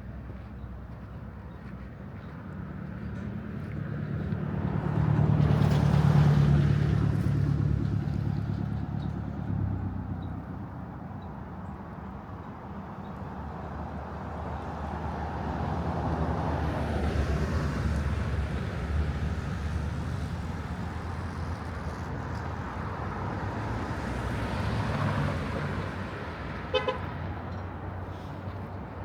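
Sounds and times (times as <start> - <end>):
vehicles driving past: 1.7 - 29.0
car horn toot: 26.7 - 27.1.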